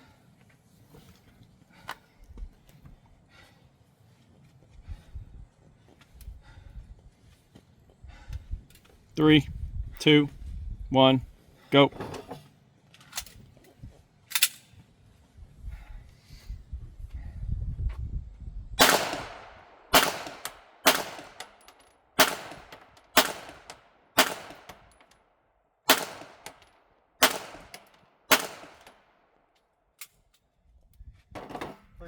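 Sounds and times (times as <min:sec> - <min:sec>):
gunshots: 0:18.8 - 0:21.6, 0:22.2 - 0:24.9, 0:25.9 - 0:26.6, 0:27.2 - 0:29.0.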